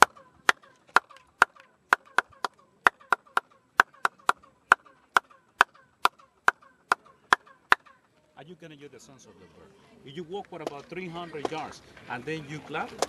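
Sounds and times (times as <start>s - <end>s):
hand claps: 0.0s - 7.8s.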